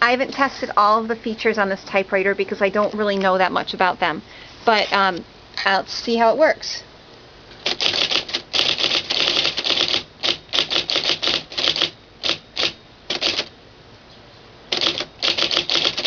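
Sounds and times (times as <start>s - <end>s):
electric typewriter typing: 7.6s - 13.5s, 14.7s - 16.0s.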